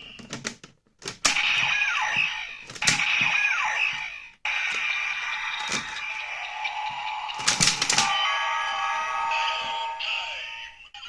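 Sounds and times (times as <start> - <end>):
toy electronic sound effects: 1.3 - 11.0.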